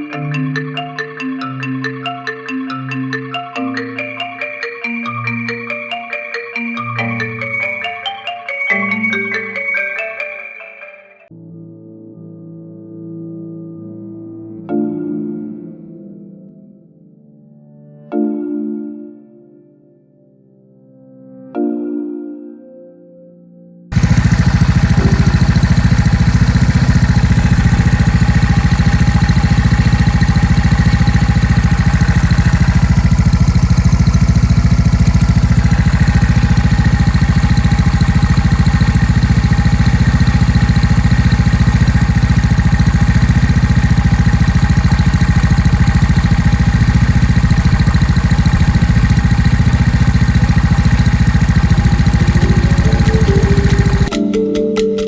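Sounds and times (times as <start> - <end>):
scooter engine idling: 23.9 - 54.2.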